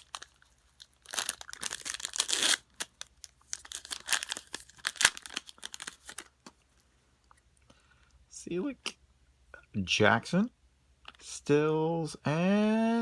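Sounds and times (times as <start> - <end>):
plastic wrapper tearing and crinkling: 0.0 - 6.5.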